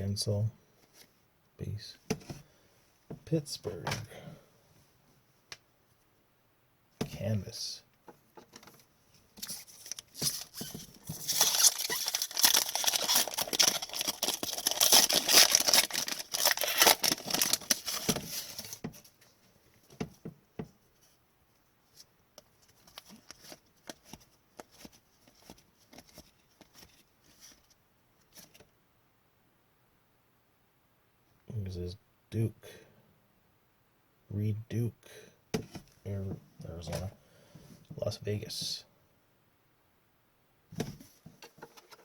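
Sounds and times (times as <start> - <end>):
wrapper tearing and crinkling: 9.4 - 18.8.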